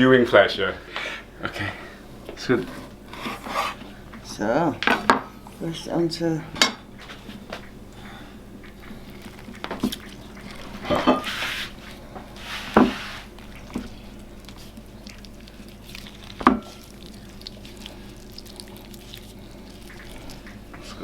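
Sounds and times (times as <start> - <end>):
short rustling hisses: 11.3 - 11.8, 12.4 - 13.3.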